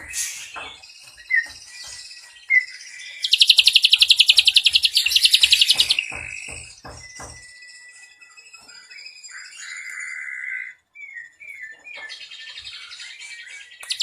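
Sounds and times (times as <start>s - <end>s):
bird chirps and rapid trill: 0.0s - 9.9s.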